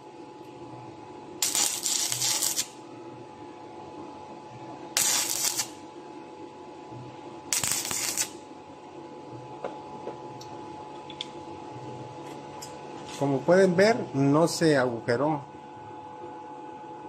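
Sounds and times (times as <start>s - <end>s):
steady low hum: 0.0s - 17.0s
stick welding arc crackle: 1.4s - 2.8s, 4.9s - 5.8s, 7.5s - 8.4s.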